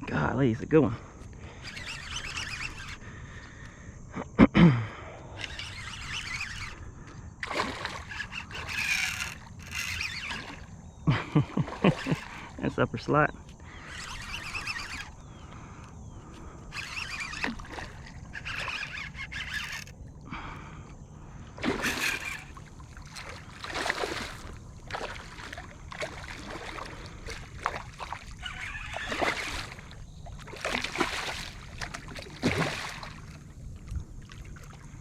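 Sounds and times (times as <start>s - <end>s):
water splashing around a kayak: 5.4s - 12.8s, 16.7s - 20.3s, 21.4s - 35.0s.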